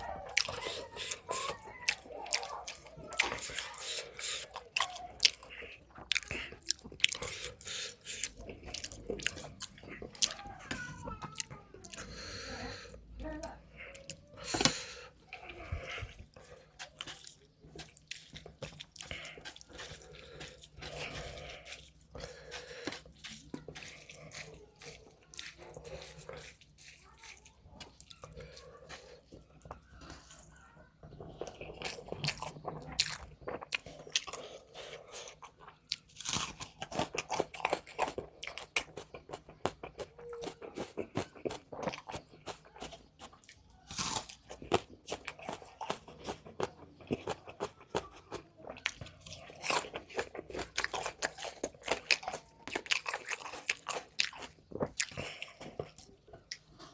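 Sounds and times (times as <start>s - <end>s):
wet mouth sounds: 0.0s - 10.6s
person chewing crunchy food: 0.0s - 56.9s.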